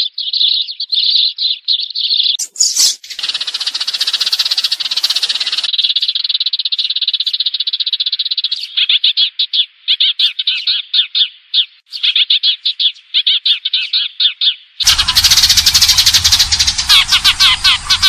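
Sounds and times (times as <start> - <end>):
sparrow sharp chirps: 0.0 - 18.0
sparrow buzzing trill: 2.4 - 6.2, 14.8 - 18.0.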